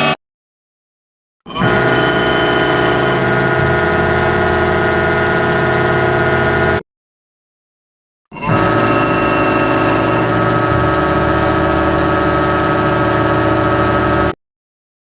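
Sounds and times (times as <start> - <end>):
steady machine drone: 1.5 - 6.8, 8.4 - 14.4.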